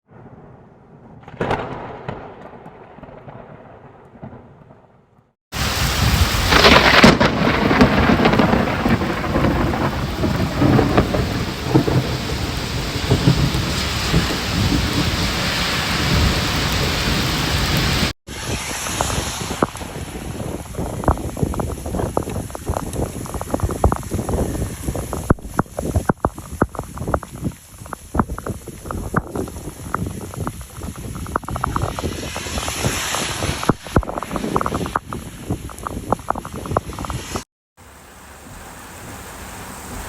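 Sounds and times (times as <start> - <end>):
thunderclap rumbling: 0.1 - 37.4
wind noise on microphone: 5.5 - 37.5
heavy rain downpour: 5.5 - 40.0.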